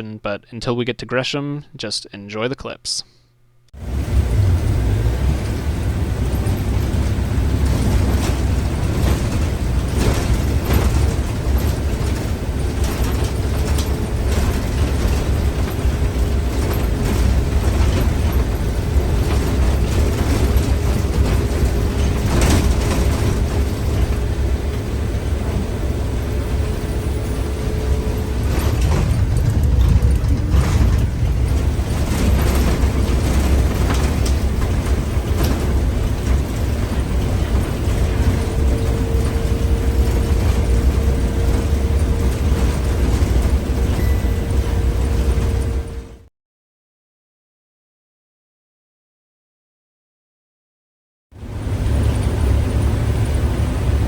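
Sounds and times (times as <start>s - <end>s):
bus engine and road rumble: 3.8s - 46.3s, 51.4s - 54.0s
clicks and rattles: 5.4s - 26.7s, 27.6s - 46.0s.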